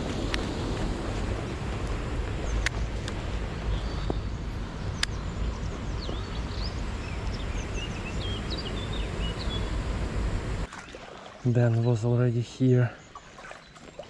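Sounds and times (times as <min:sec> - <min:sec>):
wind rushing: 0:00.0 - 0:10.7
river water flowing: 0:00.0 - 0:12.2, 0:13.0 - 0:14.0
small birds chirping: 0:01.5 - 0:10.7.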